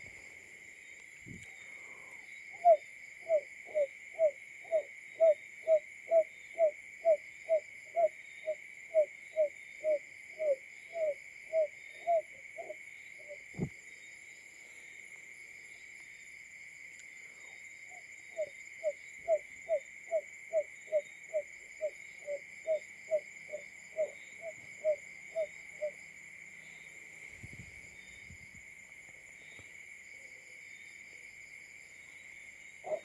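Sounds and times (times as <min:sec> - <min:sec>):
high insect-like hiss: 0:00.0 - 0:33.0.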